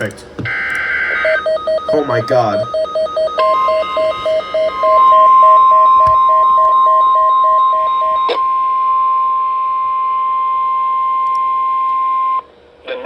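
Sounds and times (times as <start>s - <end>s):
receiver beeping: 0.0s - 12.4s
steady warning alarm tone: 0.0s - 12.5s
click: 11.2s - 11.4s.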